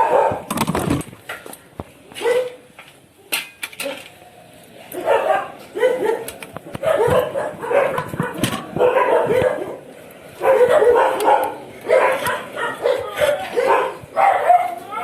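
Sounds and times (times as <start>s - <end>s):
dog barking and yipping: 0.0s - 0.5s, 2.2s - 2.6s, 5.0s - 15.0s.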